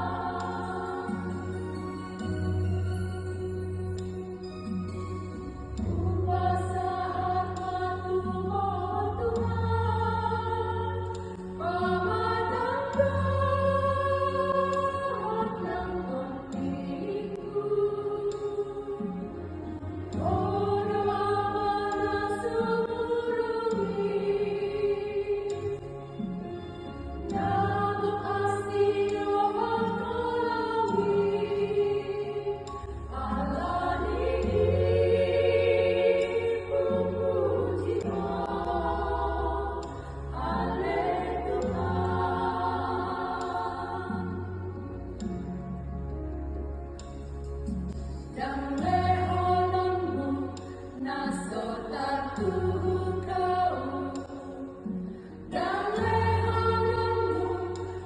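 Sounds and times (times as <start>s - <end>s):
women's choir singing in harmony: 0.0s - 45.7s, 48.3s - 58.0s.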